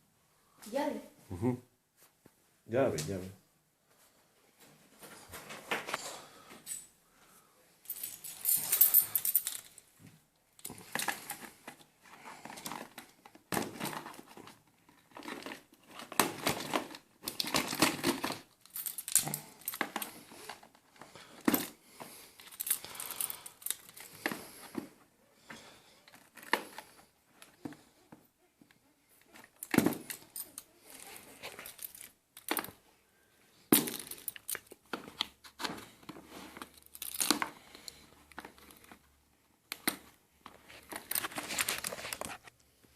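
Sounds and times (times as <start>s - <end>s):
plastic and cardboard crinkling: 10.6s - 28.2s, 28.8s - 32.8s, 33.7s - 42.6s.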